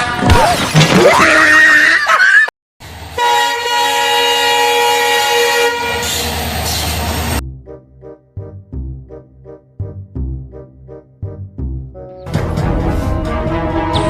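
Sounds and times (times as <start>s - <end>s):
multi-note train horn blast: 3.1s - 6.4s, 12.4s - 14.0s.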